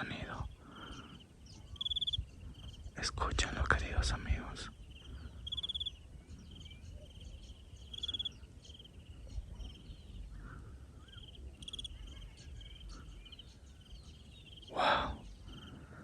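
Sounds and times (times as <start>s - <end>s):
crickets chirping: 0.0s - 10.2s, 11.0s - 16.0s.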